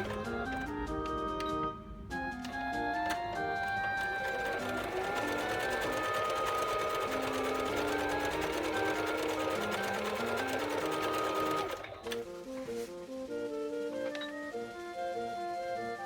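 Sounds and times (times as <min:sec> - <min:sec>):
sewing machine stitching: 0:00.0 - 0:00.8, 0:02.5 - 0:12.3.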